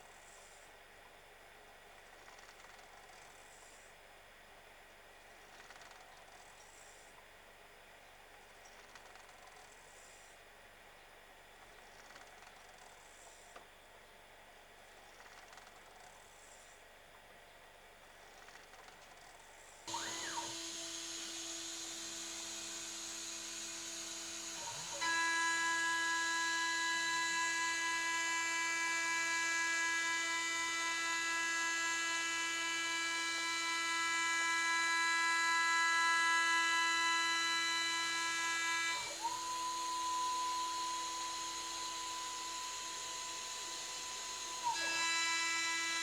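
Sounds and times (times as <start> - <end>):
milling machine high whine: 19.9 - 46.0.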